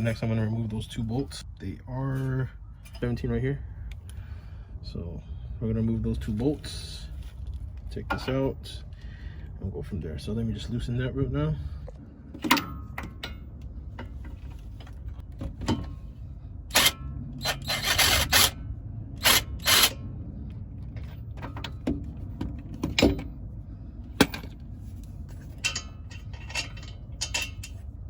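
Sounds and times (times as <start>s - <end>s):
hand tool clicking on metal bolts: 16.7s - 18.6s
ratchet rattling: 16.7s - 18.6s, 19.2s - 20.0s.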